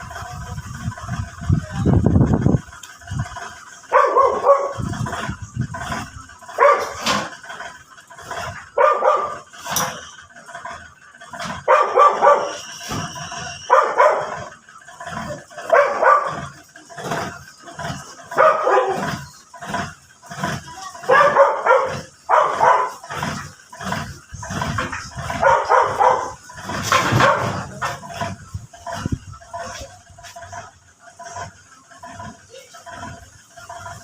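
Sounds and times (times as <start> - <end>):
dog barking: 3.9 - 4.8, 6.6 - 7.0, 8.8 - 9.5, 11.6 - 12.6, 13.7 - 14.5, 15.7 - 16.5, 18.3 - 19.2, 21.0 - 23.0, 25.3 - 26.4, 27.0 - 27.7.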